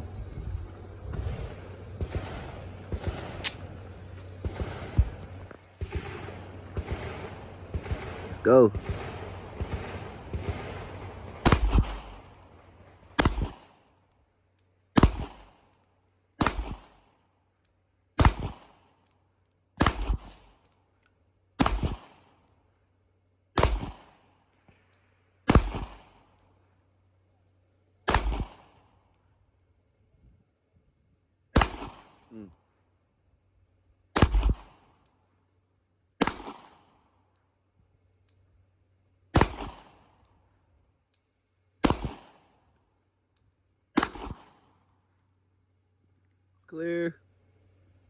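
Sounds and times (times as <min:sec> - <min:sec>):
gunshots with echo: 0:01.2 - 0:12.4, 0:13.0 - 0:13.8, 0:15.0 - 0:15.6, 0:16.4 - 0:17.0, 0:21.6 - 0:22.2, 0:23.6 - 0:24.2, 0:25.5 - 0:26.2, 0:28.1 - 0:28.8, 0:31.6 - 0:32.4, 0:34.2 - 0:34.8, 0:36.2 - 0:36.9, 0:39.4 - 0:40.0, 0:41.8 - 0:42.5, 0:44.0 - 0:44.7.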